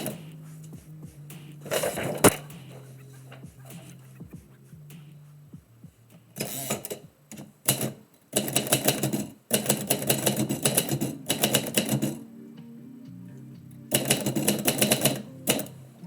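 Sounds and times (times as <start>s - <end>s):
typewriter keys clattering: 6.4s - 12.2s, 13.9s - 15.7s.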